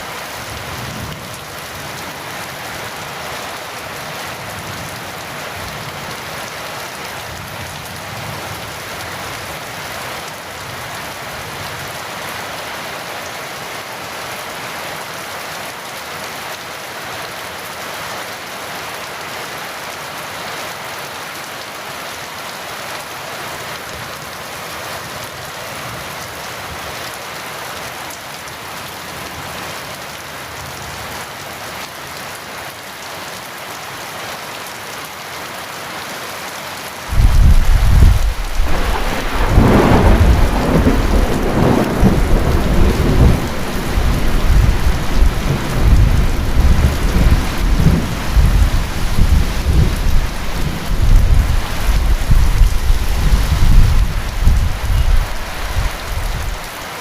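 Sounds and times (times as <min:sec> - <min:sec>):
heavy rain falling: 0:00.0 - 0:57.0
thunder crack and rumble: 0:37.1 - 0:56.5.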